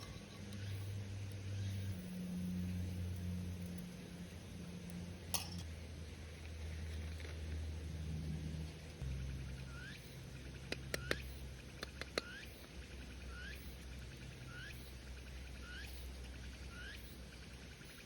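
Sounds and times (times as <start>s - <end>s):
steady low rumble: 0.0s - 18.0s
bird calling: 9.5s - 18.0s
sharp clicks: 10.7s - 12.3s.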